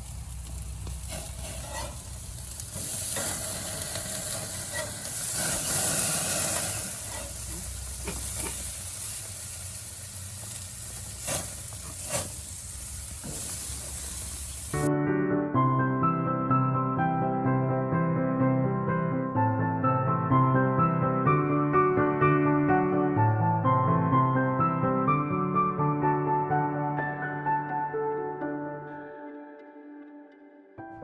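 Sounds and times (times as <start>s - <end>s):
food sizzling on grill: 0.0s - 14.9s.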